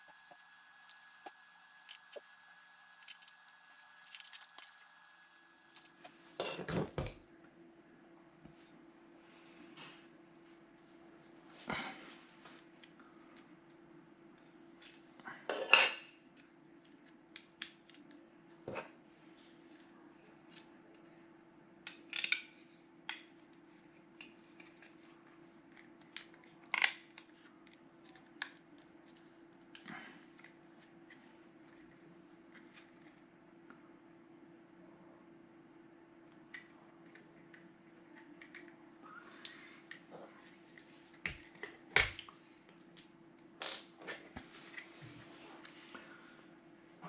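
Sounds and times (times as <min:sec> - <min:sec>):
steady hum: 0:00.0 - 0:06.9
faint steady hum: 0:00.0 - 0:47.0
small hard parts clicking: 0:03.0 - 0:04.8.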